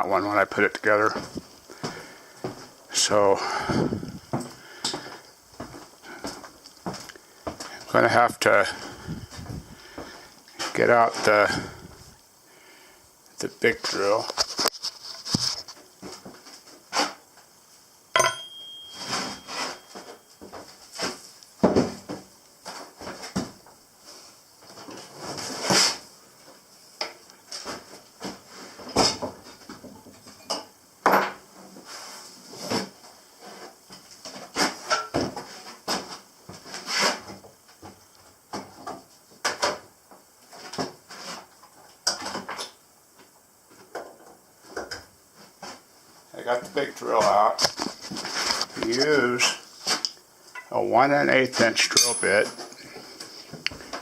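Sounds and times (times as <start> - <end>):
tools clattering: 51.9 - 52.8.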